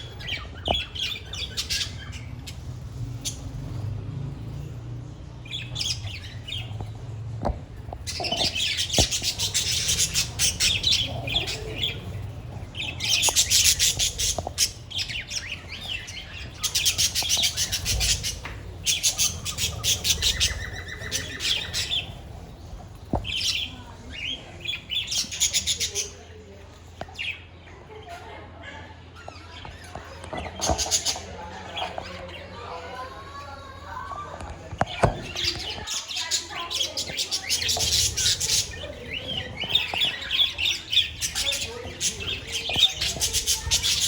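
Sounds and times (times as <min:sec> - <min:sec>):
budgerigars chattering and squawking: 0:00.0 - 0:03.9, 0:07.7 - 0:26.4, 0:29.2 - 0:32.5, 0:34.8 - 0:44.0.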